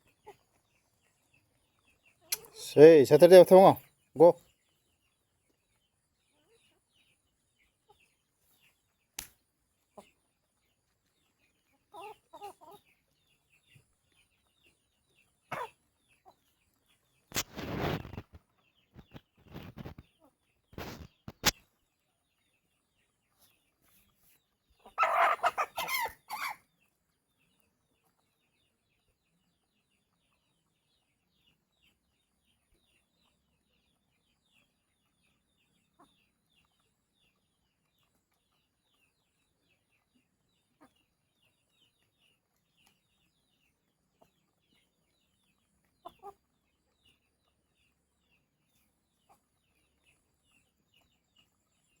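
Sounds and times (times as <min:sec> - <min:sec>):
chickens clucking faintly: 0:00.0 - 0:04.5, 0:05.4 - 0:52.0
chicken loud call: 0:25.0 - 0:26.6.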